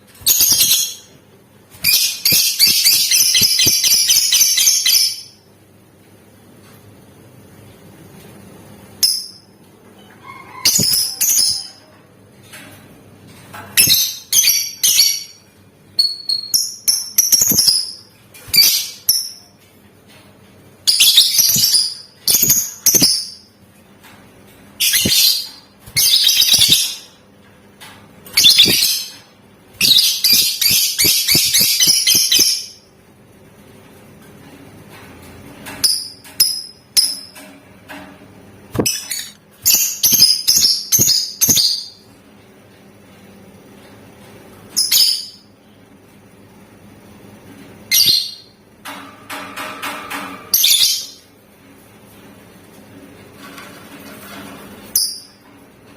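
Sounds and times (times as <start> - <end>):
lovebird chirping: 1.8 - 5.4, 24.8 - 27.1, 28.4 - 29.2, 29.8 - 32.8, 38.8 - 42.0
lovebird rapid trill: 26.0 - 27.0, 29.8 - 32.7.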